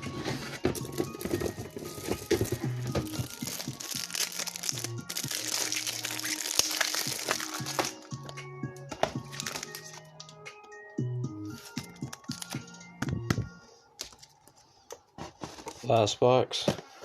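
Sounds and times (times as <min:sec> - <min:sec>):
background music: 0:00.0 - 0:17.0
card pack wrapper crinkling: 0:01.0 - 0:08.0, 0:09.3 - 0:10.0.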